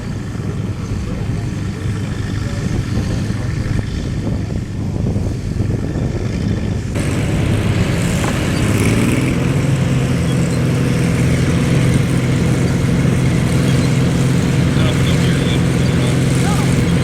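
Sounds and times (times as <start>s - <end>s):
combine harvester engine drone: 0.0s - 17.0s.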